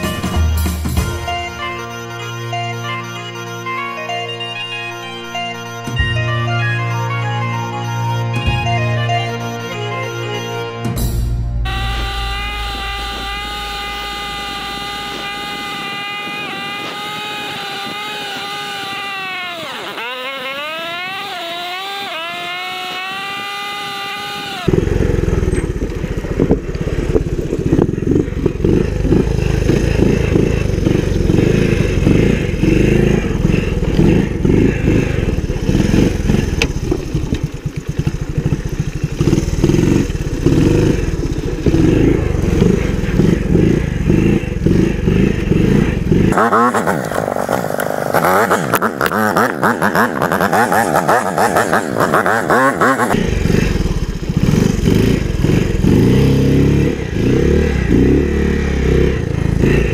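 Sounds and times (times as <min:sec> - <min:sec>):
small engine revving: 0:00.0 - 0:59.9
wind buffeting: 0:11.7 - 0:19.7, 0:22.8 - 0:49.0.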